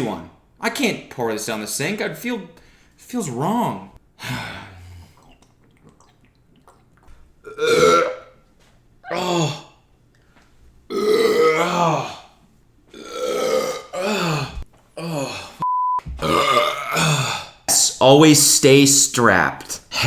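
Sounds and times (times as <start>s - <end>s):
man belching loudly: 7.5s - 8.3s, 10.9s - 12.2s, 12.9s - 15.4s, 16.1s - 17.6s
short steady beep: 15.6s - 16.1s.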